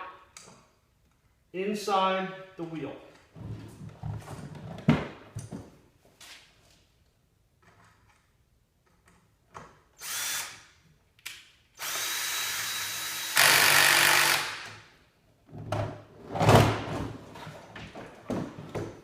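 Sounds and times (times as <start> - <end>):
electric screw gun driving screw: 10.0 - 10.7, 11.8 - 14.8.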